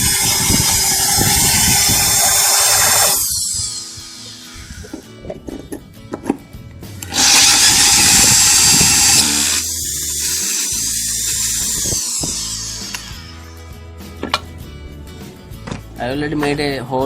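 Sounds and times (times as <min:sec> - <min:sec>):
drill grinding into ceramic tile: 0:00.0 - 0:05.1, 0:07.0 - 0:13.5
drill motor winding down: 0:00.0 - 0:05.1, 0:07.0 - 0:13.5.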